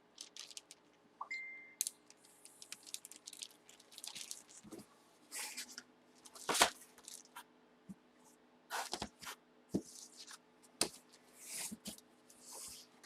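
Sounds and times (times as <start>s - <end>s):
cards and packaging rustling: 0.2s - 0.9s, 1.8s - 7.4s.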